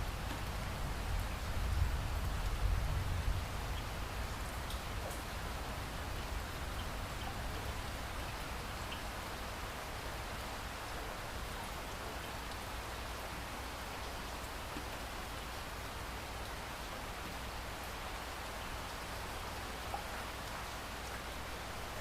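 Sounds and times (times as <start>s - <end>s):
heavy rain pouring: 0.0s - 22.0s
rain drop ticks: 4.5s - 5.3s, 6.1s - 7.6s, 8.2s - 9.1s.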